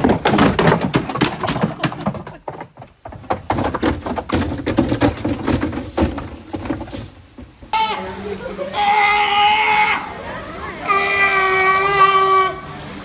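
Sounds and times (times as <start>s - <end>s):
clattering knocks and thuds: 0.0s - 7.8s.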